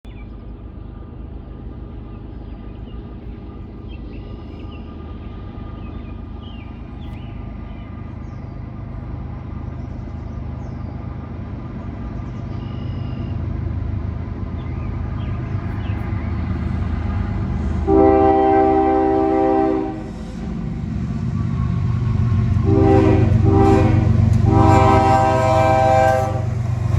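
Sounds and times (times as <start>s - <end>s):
diesel locomotives rumbling: 0.0s - 26.9s
locomotive air horn chord: 17.8s - 20.5s, 22.5s - 26.9s.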